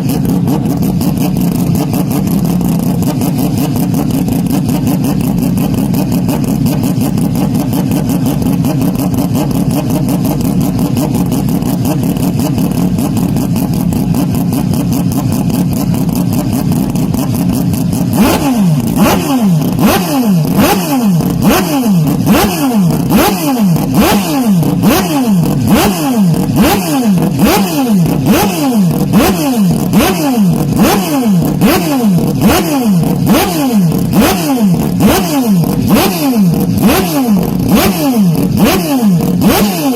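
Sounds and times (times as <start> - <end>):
distorted racing engine revving: 0.0 - 39.9.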